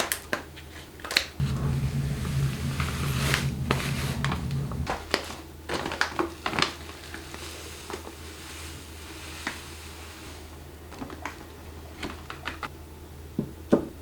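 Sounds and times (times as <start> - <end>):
low steady hum: 1.4 - 5.1.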